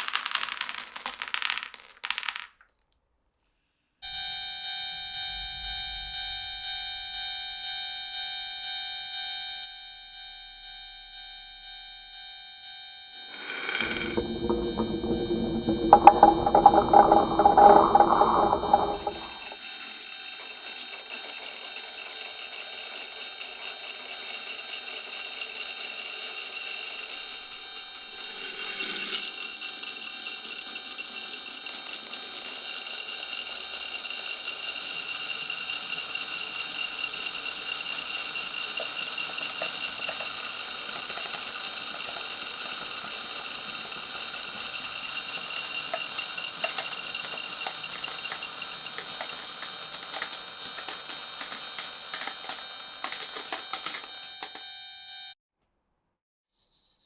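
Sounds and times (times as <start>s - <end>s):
marbles rolling and rattling on tracks: 0.0s - 2.9s, 13.3s - 54.6s.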